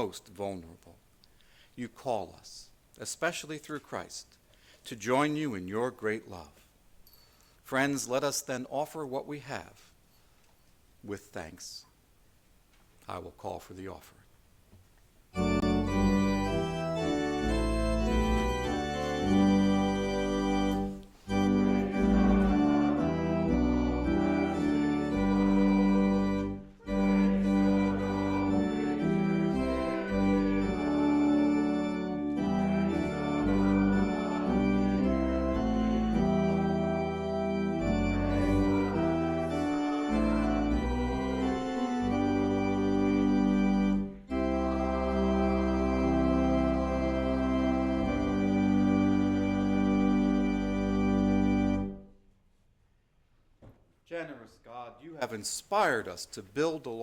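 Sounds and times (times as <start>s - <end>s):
organ playing held chords: 15.3s - 52.2s.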